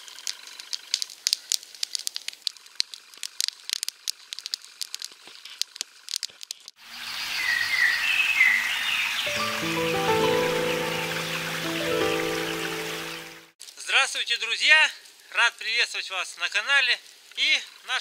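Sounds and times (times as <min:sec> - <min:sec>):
wood fire crackling: 0:00.0 - 0:06.8
steady rain-like hiss: 0:08.8 - 0:18.0
chirping tones: 0:09.3 - 0:13.5.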